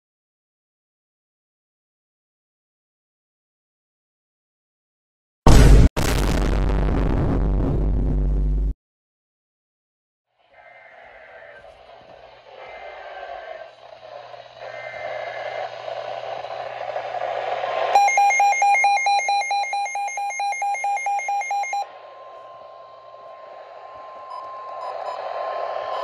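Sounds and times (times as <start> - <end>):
radio static hiss: 10.6 - 17.4
steady warning tone: 11.2 - 26.0
data bursts: 17.9 - 21.9, 23.6 - 26.0
pulsing warbling alarm beeps: 18.0 - 21.9.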